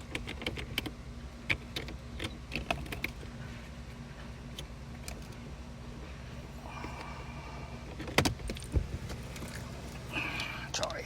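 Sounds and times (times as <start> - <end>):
gear shift knob clicks and taps: 0.0 - 3.2
low steady hum: 0.0 - 11.0.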